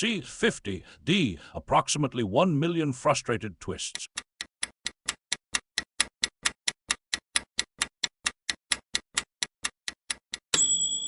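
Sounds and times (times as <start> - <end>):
clock-like timer ticking: 3.3 - 11.0
bright bell ding: 10.6 - 11.0.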